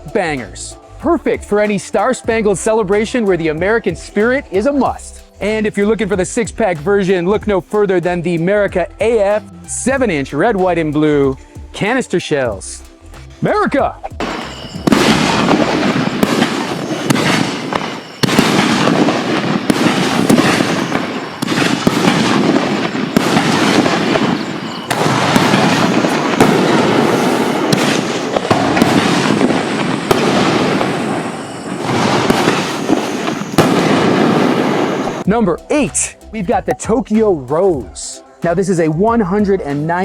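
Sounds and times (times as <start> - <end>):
firework booms and crackle: 14.2 - 35.3.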